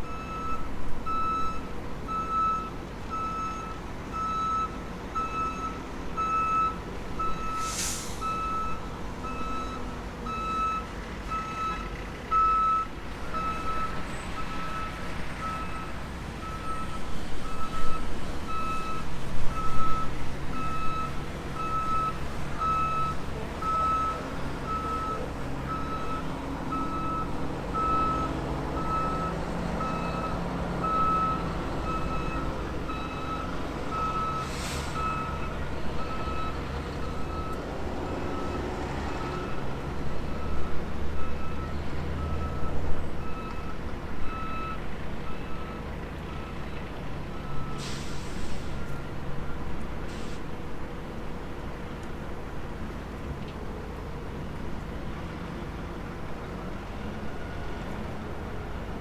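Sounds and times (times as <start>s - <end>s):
reversing alarm beeping: 0.0s - 7.6s, 8.2s - 46.7s, 47.3s - 48.2s.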